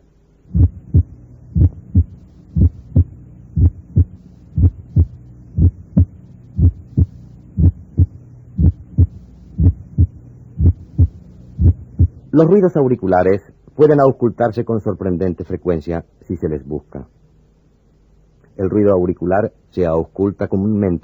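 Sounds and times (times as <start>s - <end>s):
faint steady hum: 0.0s - 21.0s
heartbeat lub-dub: 0.5s - 12.3s.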